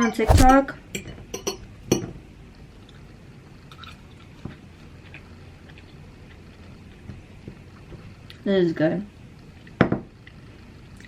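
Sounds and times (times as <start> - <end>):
person chewing food: 3.7 - 8.4.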